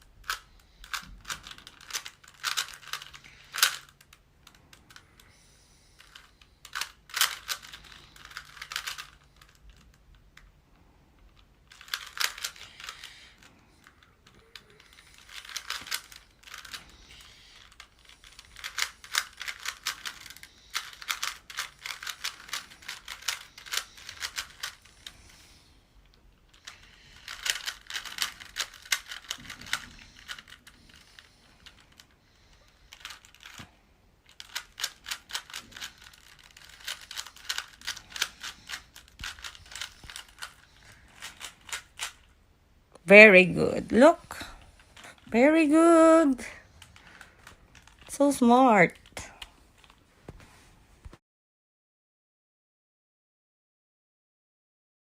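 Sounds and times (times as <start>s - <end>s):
puzzle cube clicking: 0.2s - 5.0s, 6.0s - 10.0s, 11.3s - 25.4s, 26.6s - 32.1s, 32.9s - 42.3s.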